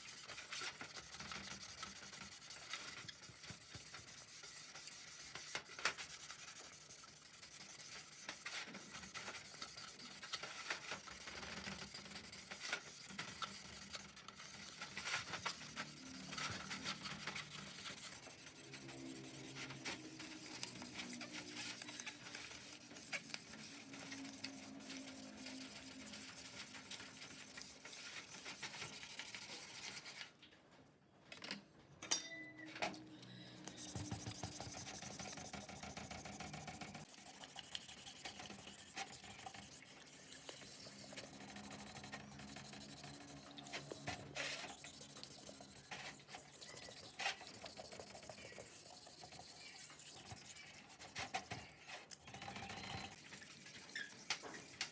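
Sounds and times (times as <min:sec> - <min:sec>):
hand scraping and rubbing: 0:00.0 - 0:30.2.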